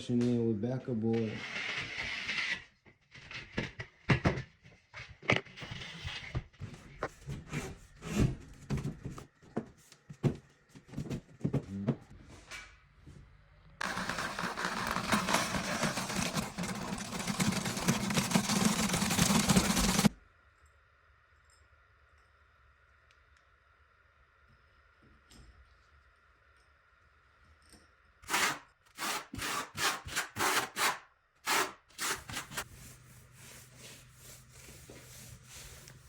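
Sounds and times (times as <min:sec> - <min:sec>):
power tool running: 0:13.8 - 0:20.1.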